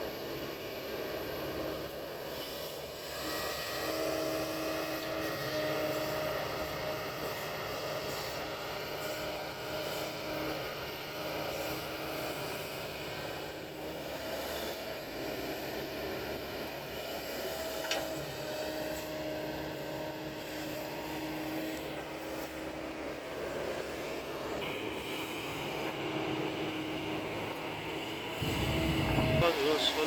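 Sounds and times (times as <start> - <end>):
excavator diesel engine running: 17.3 - 30.0.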